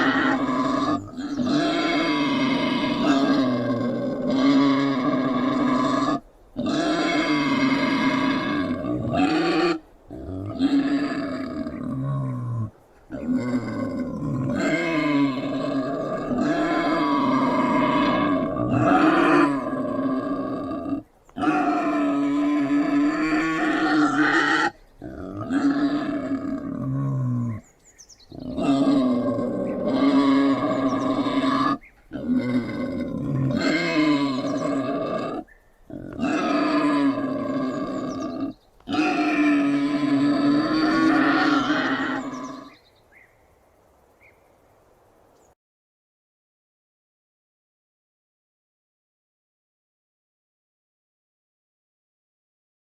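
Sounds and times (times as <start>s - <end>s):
wild boar grunting and growling: 0.0s - 27.7s, 28.3s - 42.8s.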